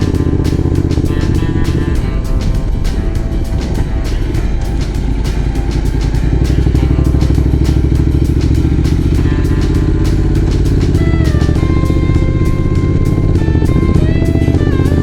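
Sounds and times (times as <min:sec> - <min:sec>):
background music: 0:00.0 - 0:15.0
motorcycle engine running: 0:00.0 - 0:15.0.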